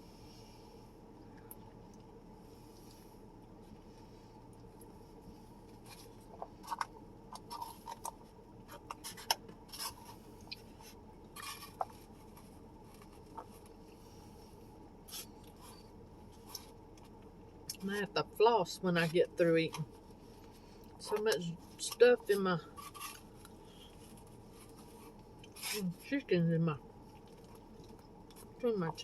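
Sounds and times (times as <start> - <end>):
person chewing food: 1.4 - 17.8, 27.0 - 28.6.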